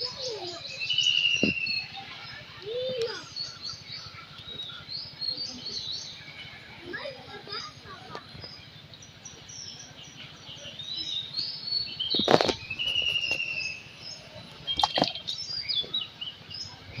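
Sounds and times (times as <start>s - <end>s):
small birds chirping: 0.0s - 17.0s
loud rustling or splashing: 14.6s - 15.3s.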